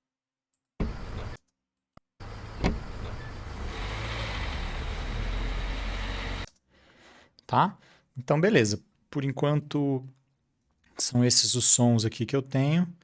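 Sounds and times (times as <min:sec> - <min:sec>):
low car rumble: 0:00.8 - 0:01.4, 0:02.2 - 0:06.5
car door handle click: 0:02.4 - 0:03.2.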